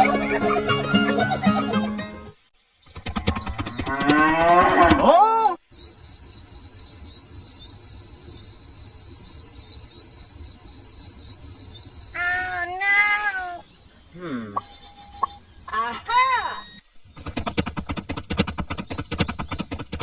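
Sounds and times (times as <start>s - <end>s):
cow mooing: 3.9s - 5.0s
crickets chirring: 5.7s - 17.2s.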